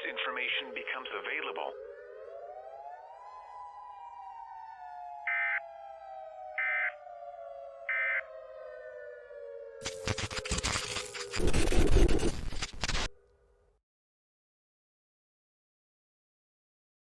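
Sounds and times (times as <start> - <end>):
siren winding down: 0.0 - 12.0
loud crackling noise burst: 9.8 - 13.1.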